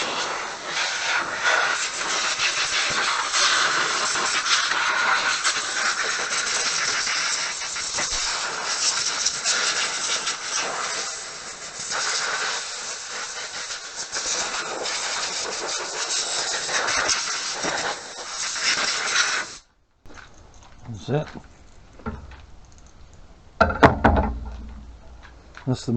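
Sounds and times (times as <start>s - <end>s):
air blow gun hissing: 0.0s - 19.7s.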